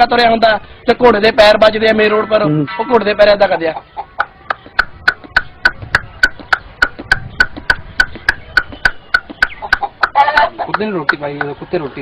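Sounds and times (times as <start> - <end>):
boy clicking his tongue: 4.2 - 10.6.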